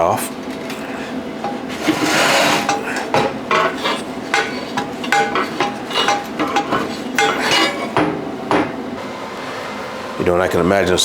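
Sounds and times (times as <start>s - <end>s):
steel pieces clanking together: 1.4s - 8.9s.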